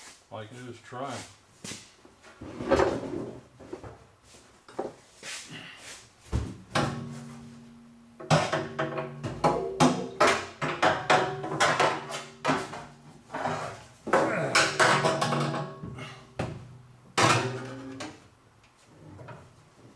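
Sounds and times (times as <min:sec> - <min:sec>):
metal clunks and scrapes: 0:08.2 - 0:18.2.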